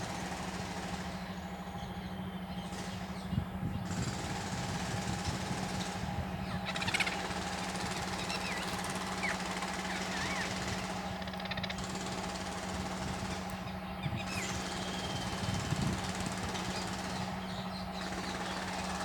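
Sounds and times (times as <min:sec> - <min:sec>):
motor drone: 0:00.0 - 0:19.0
bird squawk: 0:06.3 - 0:12.0.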